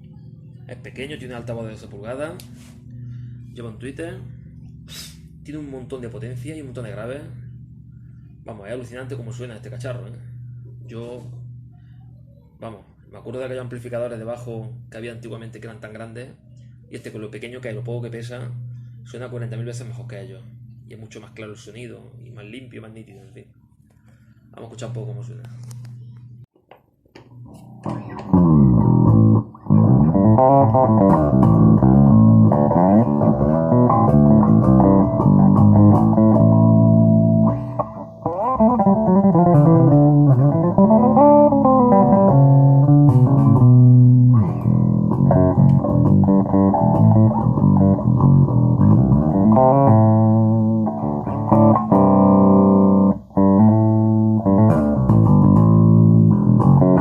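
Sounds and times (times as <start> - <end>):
electric bass guitar playing: 0.0 - 13.0, 27.2 - 57.0.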